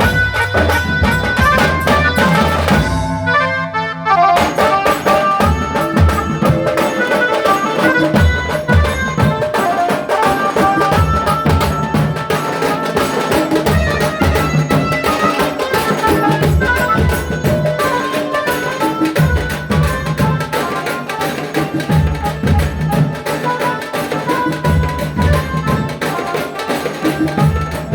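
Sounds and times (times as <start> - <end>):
fast dense drumming: 0.0 - 3.1
pitched melody of held notes: 0.0 - 27.9.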